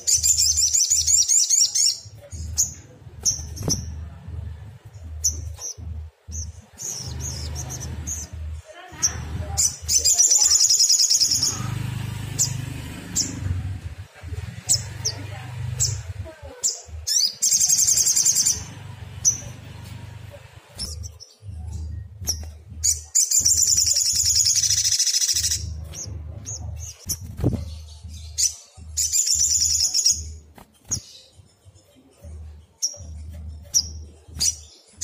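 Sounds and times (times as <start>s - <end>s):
low steady hum: 17.8s - 23.7s.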